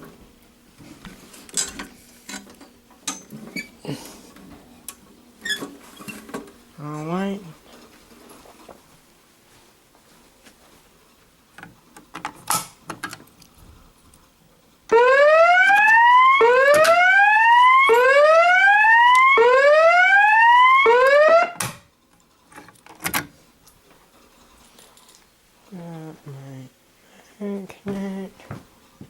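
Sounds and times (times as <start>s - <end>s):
fire alarm whoop tone: 14.9s - 21.6s.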